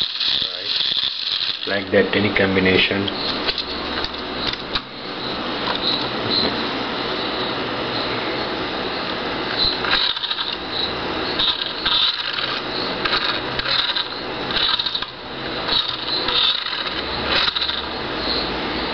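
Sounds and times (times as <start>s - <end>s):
toy car motor whirring: 0.0s - 1.9s, 9.5s - 18.0s
steady hum: 0.0s - 18.9s.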